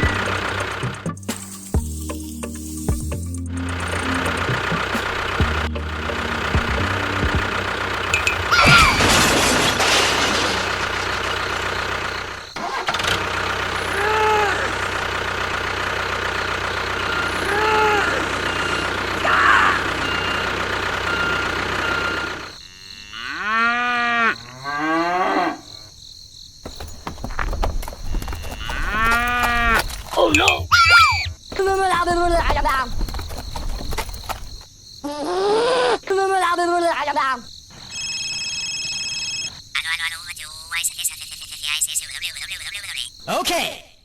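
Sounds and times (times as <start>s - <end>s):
engine running: 0.0s - 22.5s
cattle mooing: 22.1s - 25.9s, 28.2s - 30.5s.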